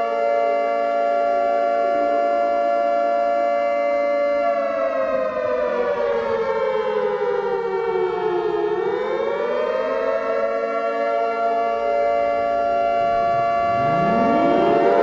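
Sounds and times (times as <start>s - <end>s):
warning siren wailing: 0.0s - 15.0s
steady held tone: 12.3s - 15.0s.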